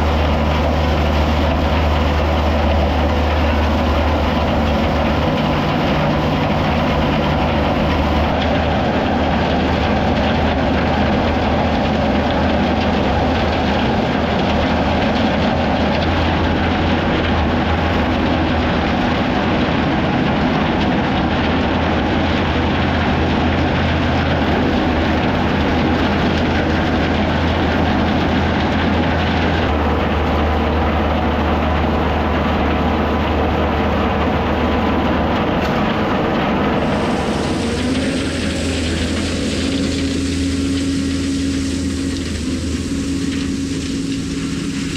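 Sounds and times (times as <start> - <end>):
tractor engine rumbling: 0.0 - 44.9
steady tone: 24.0 - 44.9.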